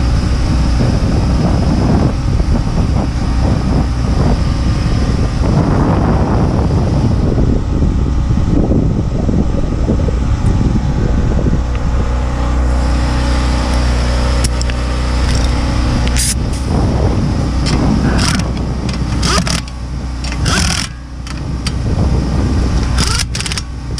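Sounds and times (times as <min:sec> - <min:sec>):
car engine running: 0:00.0 - 0:23.9
wind buffeting microphone: 0:00.0 - 0:23.9
sharp clicks and knocks: 0:17.6 - 0:21.8, 0:22.8 - 0:23.7.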